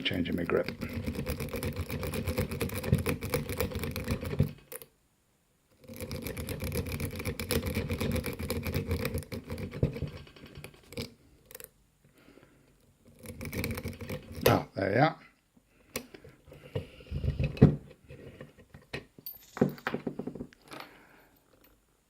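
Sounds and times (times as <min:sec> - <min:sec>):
lock pick clicking and scraping: 0:00.5 - 0:04.9, 0:05.7 - 0:11.8, 0:13.0 - 0:14.6, 0:15.8 - 0:19.4.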